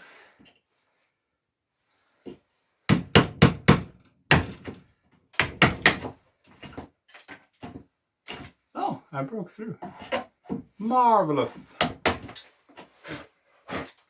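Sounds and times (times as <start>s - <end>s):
hammer striking chisel in wood: 2.9s - 4.8s, 5.4s - 6.1s.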